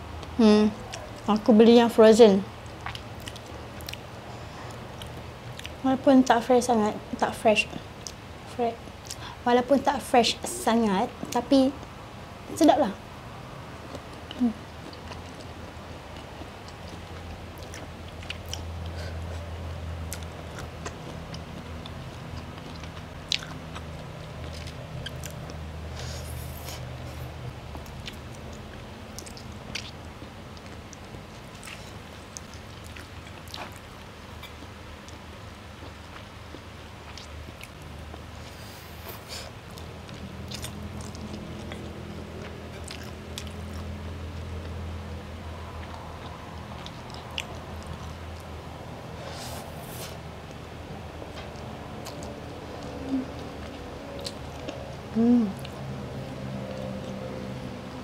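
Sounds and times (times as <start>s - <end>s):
low steady hum: 0.0s - 58.0s
chewing and biting food: 2.6s - 5.8s, 13.9s - 57.7s.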